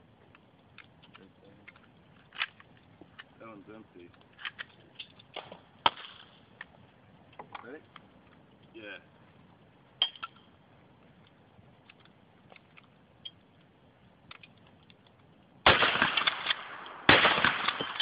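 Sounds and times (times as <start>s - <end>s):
shotgun blasts: 15.6s - 18.0s.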